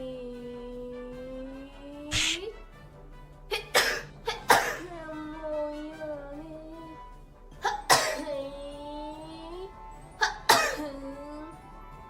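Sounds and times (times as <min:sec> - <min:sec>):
girl sneezing: 0:02.1 - 0:02.5, 0:03.5 - 0:04.9, 0:07.6 - 0:08.3, 0:10.2 - 0:11.1.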